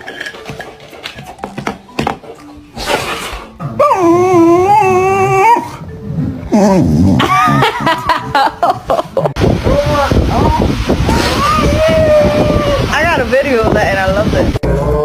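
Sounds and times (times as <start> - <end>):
dog howling: 3.7 - 5.8.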